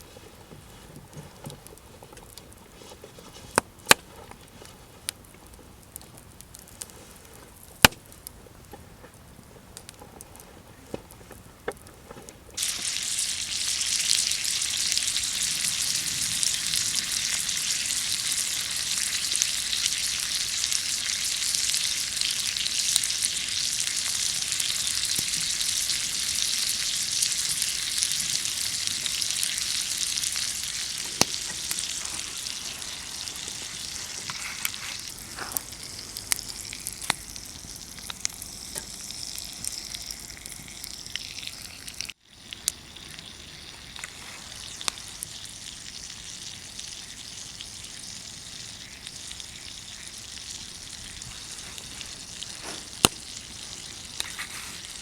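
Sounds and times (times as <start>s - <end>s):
campfire sizzling hiss: 0.0s - 55.0s
fire pops: 3.5s - 13.6s, 24.3s - 40.6s, 51.0s - 55.0s.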